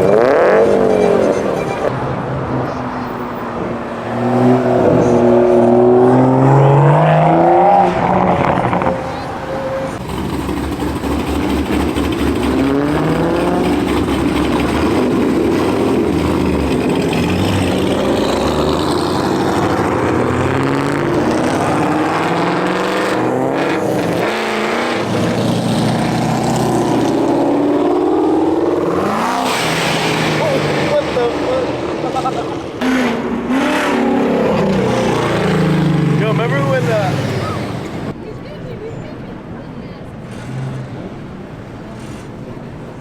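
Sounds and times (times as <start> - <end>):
car engines revving: 0.0 - 43.0.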